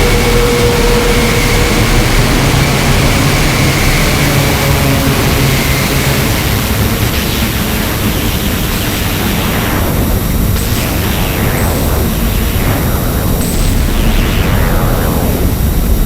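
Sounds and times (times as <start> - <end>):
loud hissing noise: 0.0 - 16.0
low rumbling drone: 0.0 - 16.0.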